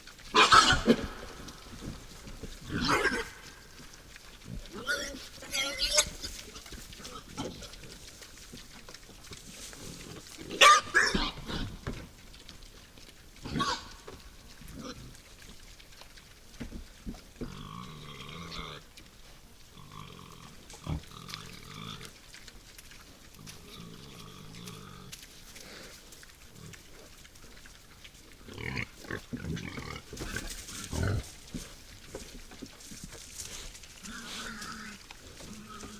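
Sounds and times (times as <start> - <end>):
wild boar squealing: 0.3 - 1.1, 2.6 - 3.5, 4.7 - 6.5, 10.5 - 11.7, 13.4 - 14.0
wild boar grunting: 0.3 - 8.2, 17.4 - 18.9, 23.3 - 27.2, 28.3 - 31.9, 32.9 - 35.9.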